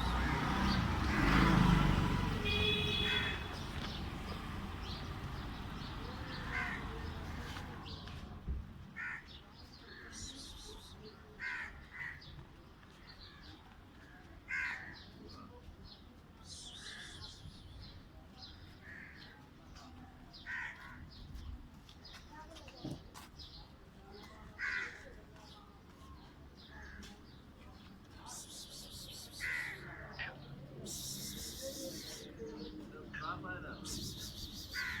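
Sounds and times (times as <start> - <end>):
crows calling: 2.9 - 3.6, 6.2 - 7.2, 9.0 - 9.4, 11.4 - 12.3, 14.5 - 15.1, 20.4 - 21.0, 24.6 - 25.1, 29.4 - 30.5, 34.7 - 35.0.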